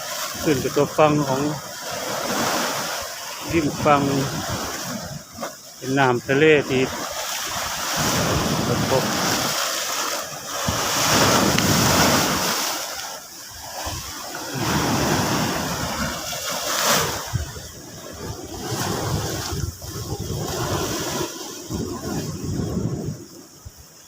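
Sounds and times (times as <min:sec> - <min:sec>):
sea waves breaking on shore: 0:00.0 - 0:24.0.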